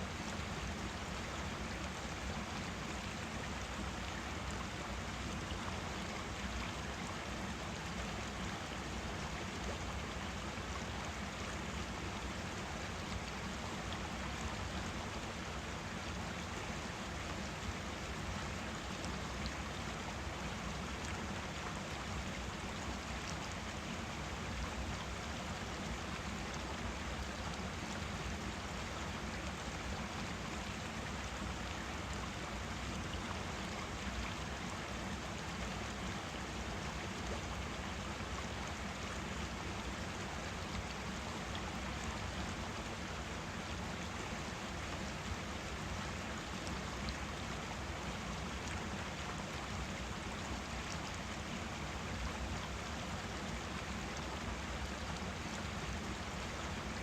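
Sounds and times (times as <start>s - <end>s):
stream flowing: 0.0s - 57.0s.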